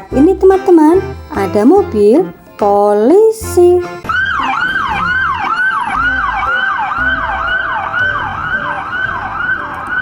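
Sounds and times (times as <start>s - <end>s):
toy police siren wailing: 4.0s - 10.0s.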